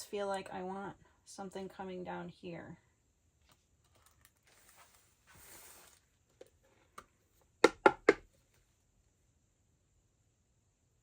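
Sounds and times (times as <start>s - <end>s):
soft hiss of air: 4.5s - 6.3s.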